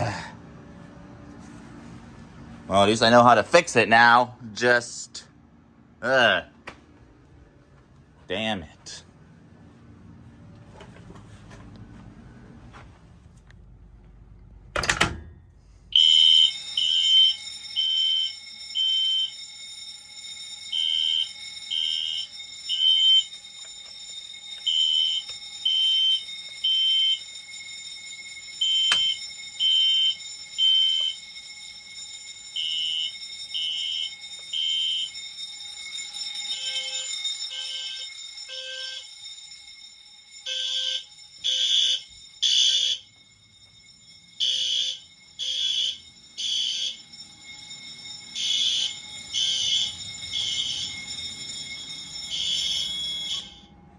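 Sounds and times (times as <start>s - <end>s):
fire alarm beeps: 14.8s - 53.9s
steady high-pitched tone: 15.9s - 53.9s.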